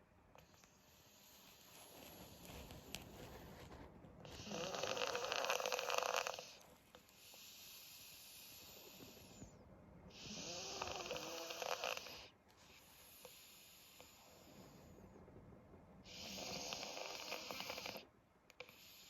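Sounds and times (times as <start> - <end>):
dog breathing: 0.4 - 15.2, 16.0 - 19.0
dog snoring: 4.2 - 6.6, 7.2 - 15.2, 16.0 - 19.0.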